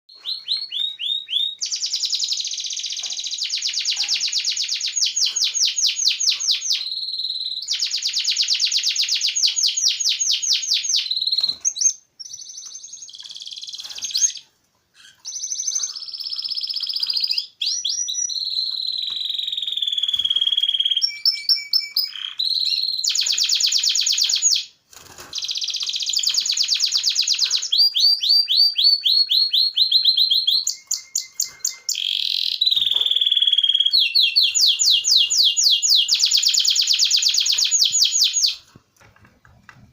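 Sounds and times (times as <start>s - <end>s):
lovebirds chirping shrilly: 0.1s - 14.4s, 15.0s - 38.6s.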